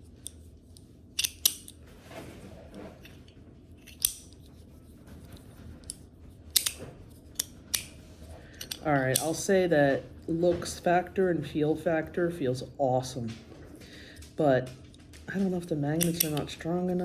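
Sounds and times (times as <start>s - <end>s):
metal fidget parts clicking: 0.2s - 1.8s, 3.8s - 4.5s, 5.8s - 6.8s, 7.4s - 9.4s, 15.9s - 16.5s.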